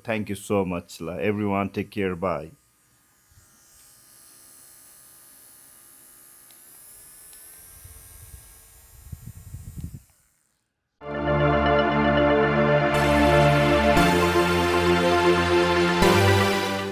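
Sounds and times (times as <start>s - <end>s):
electric fan humming: 0.0s - 10.6s
music: 11.0s - 16.9s.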